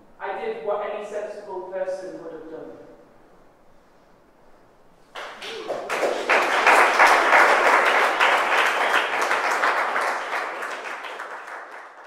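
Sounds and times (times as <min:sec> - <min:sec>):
audience applauding: 0:05.1 - 0:12.0.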